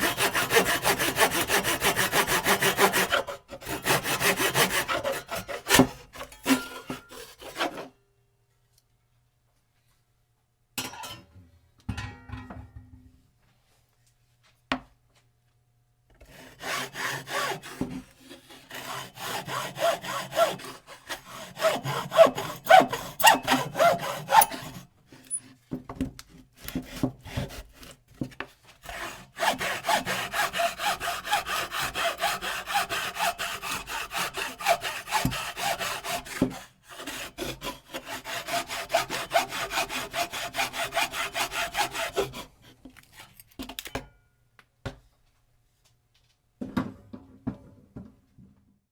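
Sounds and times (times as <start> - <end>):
hand saw cutting: 0.0 - 7.9, 16.2 - 25.5, 26.6 - 28.0, 28.8 - 43.4.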